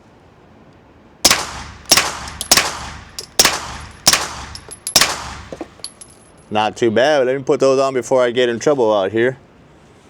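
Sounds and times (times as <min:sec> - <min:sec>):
suppressed gunshots: 0:01.3 - 0:05.9.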